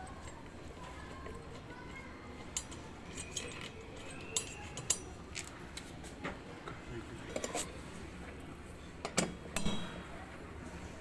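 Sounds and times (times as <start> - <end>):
metal tools clicking and clinking: 0.0 - 5.6.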